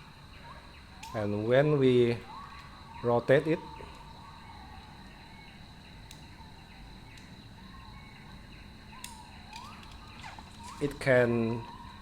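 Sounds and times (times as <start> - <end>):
faint bird chirps: 0.0 - 12.0
faint clicks: 6.0 - 6.3.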